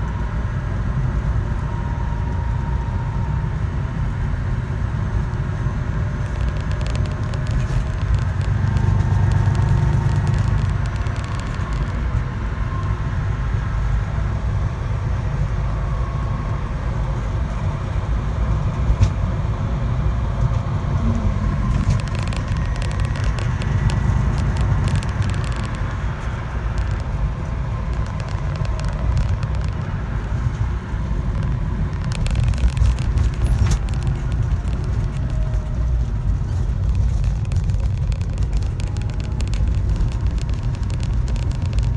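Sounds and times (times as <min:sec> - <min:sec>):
vehicle engine rumbling: 0:00.0 - 0:41.9
fast clicking: 0:06.2 - 0:12.2, 0:21.0 - 0:41.9.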